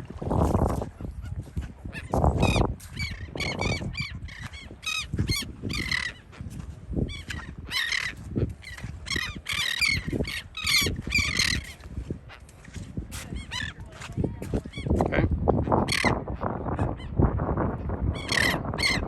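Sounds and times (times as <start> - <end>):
wind rumble on microphone: 0.0 - 19.0
terns squawking: 7.1 - 11.7.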